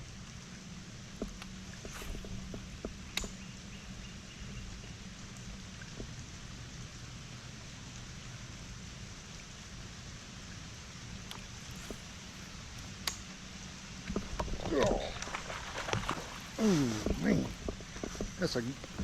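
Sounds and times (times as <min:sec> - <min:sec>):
light rain patter: 0:00.0 - 0:19.0.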